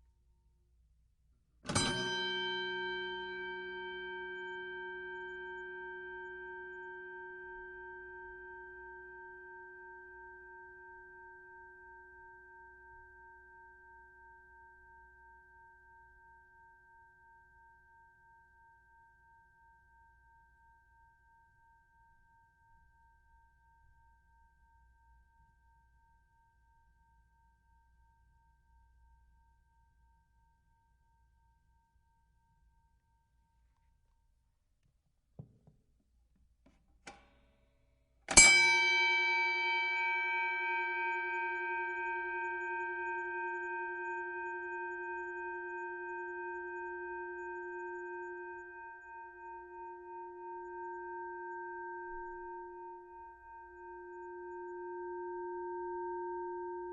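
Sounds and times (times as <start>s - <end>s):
boxing ring bell ringing: 38.3s - 41.2s.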